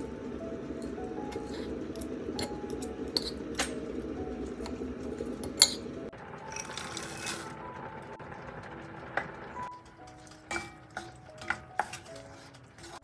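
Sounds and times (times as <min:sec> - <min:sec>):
soft background music: 0:00.0 - 0:13.0
dishes and cutlery clinking: 0:00.8 - 0:03.9, 0:05.4 - 0:07.5, 0:09.9 - 0:13.0.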